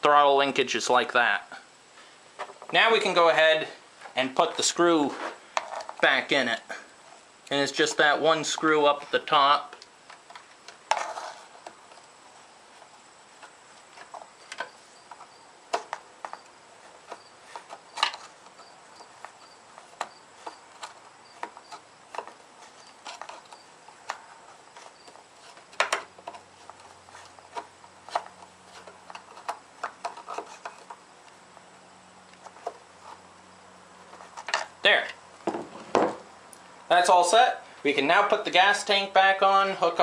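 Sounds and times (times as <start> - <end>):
knocks: 35.5 - 36.3.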